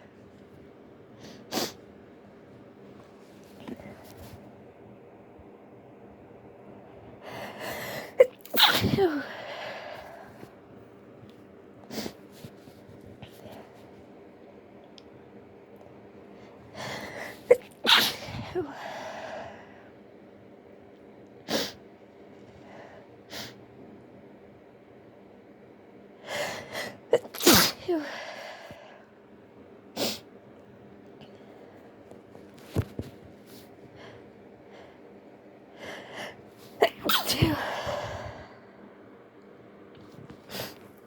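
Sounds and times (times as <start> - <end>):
person sneezing: 8.0 - 9.5, 17.3 - 18.7, 27.2 - 28.2, 36.6 - 38.0.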